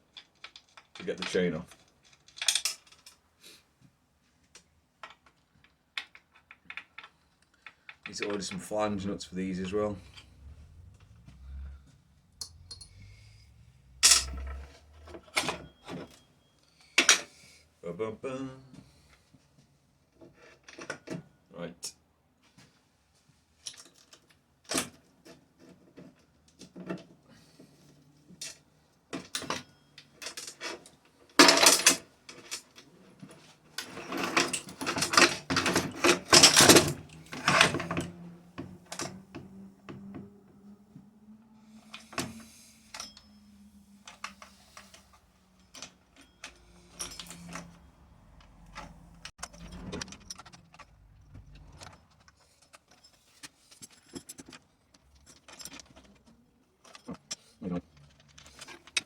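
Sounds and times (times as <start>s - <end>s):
metal chain clinking and rattling: 9.3s - 16.3s, 29.2s - 38.2s, 42.8s - 59.0s.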